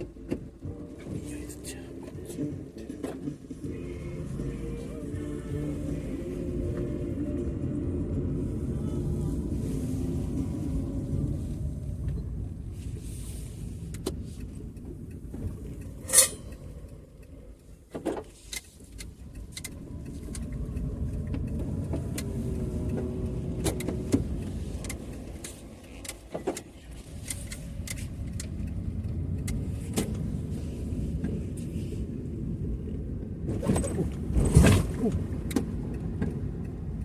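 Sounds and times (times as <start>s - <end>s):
low rumble: 0.0s - 17.9s.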